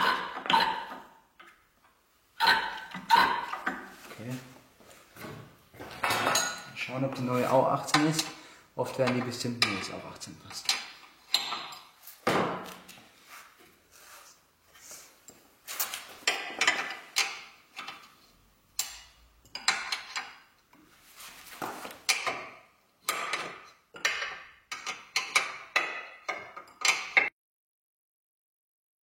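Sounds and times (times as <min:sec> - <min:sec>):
hand tools clicking and clanking: 0:00.0 - 0:04.1, 0:05.2 - 0:12.0, 0:15.2 - 0:20.8, 0:21.6 - 0:27.3.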